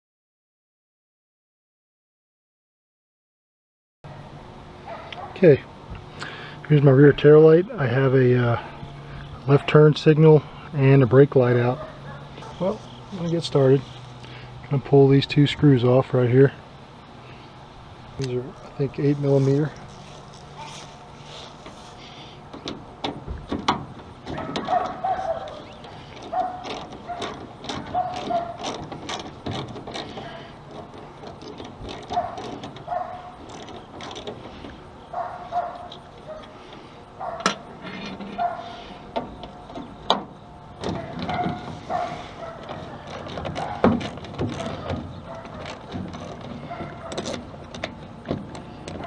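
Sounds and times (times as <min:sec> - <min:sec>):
short squeaks: 0:18.6 - 0:22.9, 0:23.7 - 0:40.1, 0:40.8 - 0:49.0.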